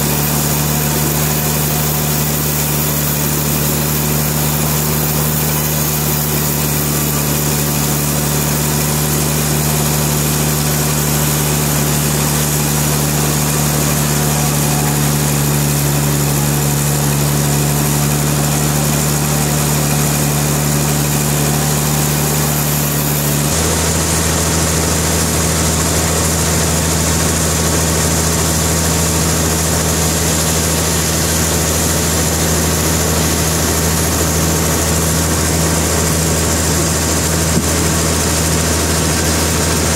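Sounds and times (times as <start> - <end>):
sawmill engine humming: 0.0 - 39.9.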